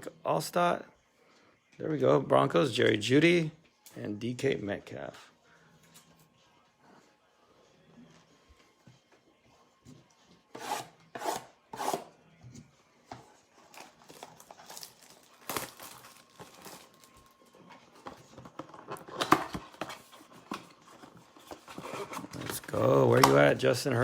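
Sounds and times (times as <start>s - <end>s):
rasping strokes: 10.5s - 12.1s
wrappers tearing and crinkling: 13.6s - 17.6s.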